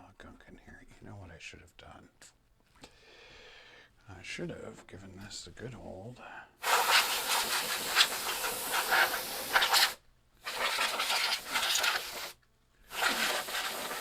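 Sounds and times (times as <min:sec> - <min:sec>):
compressed air hissing: 0:06.6 - 0:14.0.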